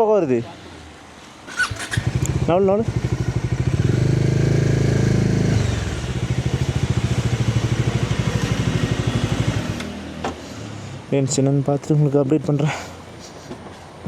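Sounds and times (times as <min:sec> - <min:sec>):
motorcycle engine revving and idling: 0:01.5 - 0:10.0.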